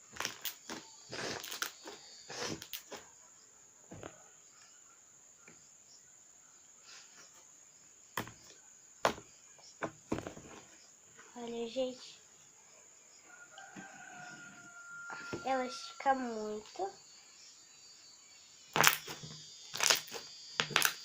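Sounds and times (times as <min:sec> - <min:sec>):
slime popping and clicking: 0:18.8 - 0:19.1, 0:19.8 - 0:21.0.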